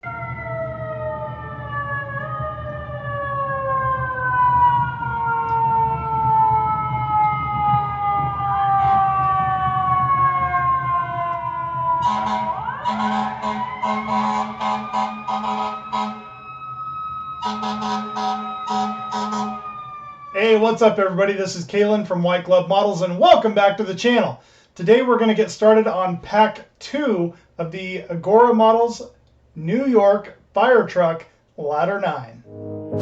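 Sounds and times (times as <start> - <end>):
fire engine siren: 0.0 - 21.0.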